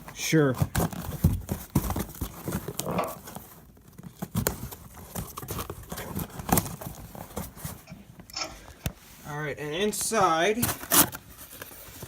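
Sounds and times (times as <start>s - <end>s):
cardboard package being opened: 0.7s - 7.9s.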